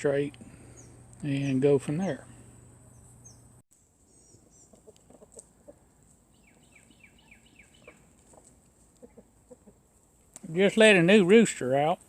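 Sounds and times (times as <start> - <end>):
chickens clucking: 4.3 - 10.1.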